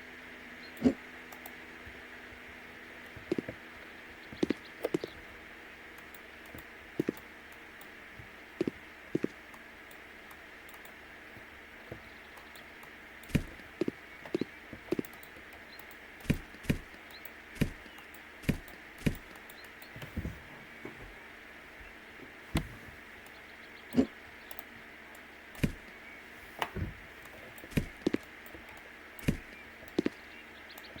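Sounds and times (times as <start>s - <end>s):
steady background hum: 0.0s - 31.0s
irregular knocks and taps: 13.3s - 21.2s.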